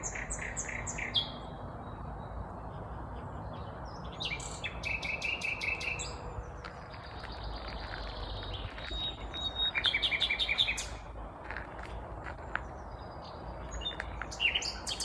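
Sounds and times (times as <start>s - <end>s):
nightingale singing: 0.0s - 2.4s, 3.6s - 11.1s, 12.9s - 15.0s.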